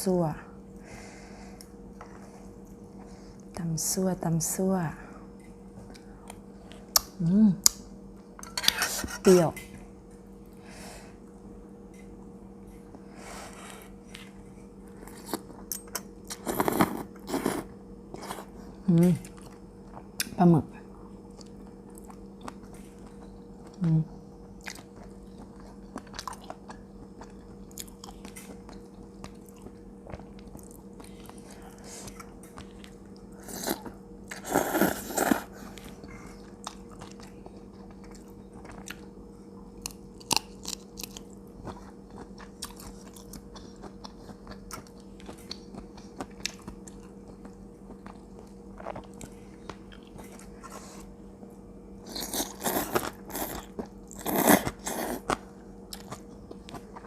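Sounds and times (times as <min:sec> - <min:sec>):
faint steady hum: 0:00.0 - 0:57.0
wet chewing and crunching: 0:24.4 - 0:39.2, 0:39.8 - 0:51.1, 0:52.1 - 0:57.0.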